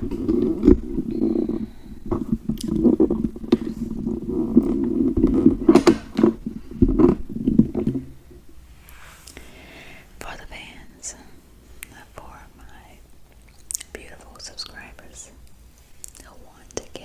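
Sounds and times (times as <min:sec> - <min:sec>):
stomach gurgling: 0:00.0 - 0:08.5.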